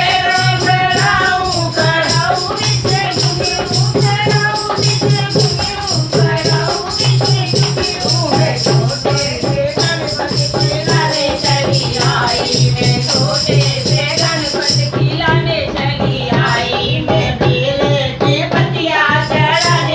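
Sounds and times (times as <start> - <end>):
shaker rattle: 0.0 - 14.9
devotional song sung to a beat: 0.0 - 19.9.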